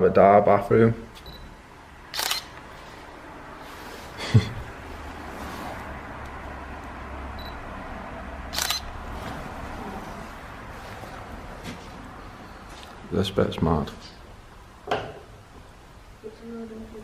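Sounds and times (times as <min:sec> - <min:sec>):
camera shutter clicking: 0:02.1 - 0:02.6, 0:08.5 - 0:08.9.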